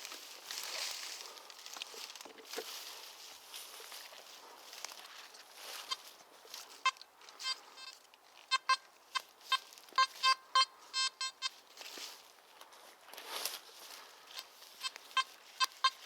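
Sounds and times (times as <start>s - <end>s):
faint rustling: 0.0s - 8.1s
metal detector high beeps: 6.7s - 11.6s, 14.8s - 16.0s.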